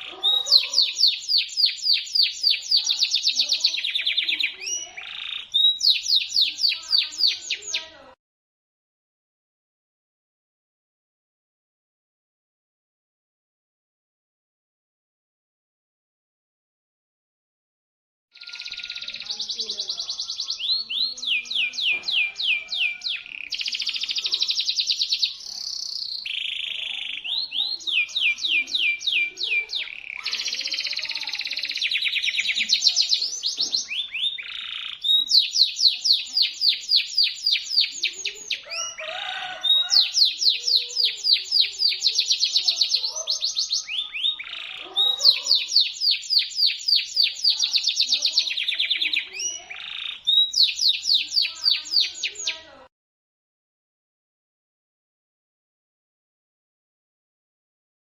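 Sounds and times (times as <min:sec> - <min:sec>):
canary singing rapid rolls: 0:00.0 - 0:08.0, 0:18.4 - 0:52.7.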